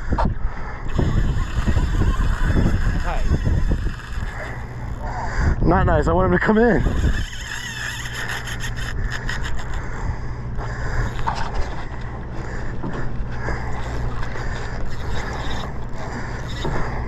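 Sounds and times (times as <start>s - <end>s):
boat engine droning: 0.0s - 17.0s
fishing reel clicks: 0.8s - 5.3s, 6.6s - 10.0s, 10.8s - 11.6s, 13.8s - 16.8s
fishing reel gears scraping: 0.8s - 12.6s, 13.2s - 17.0s.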